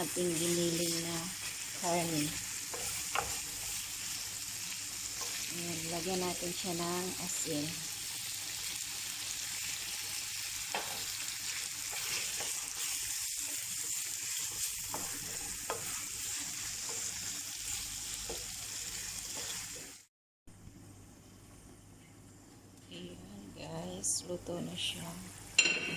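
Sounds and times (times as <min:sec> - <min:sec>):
meat sizzling in frying pan: 0:00.0 - 0:20.1
spatula scraping pan: 0:00.1 - 0:05.6, 0:10.6 - 0:19.9.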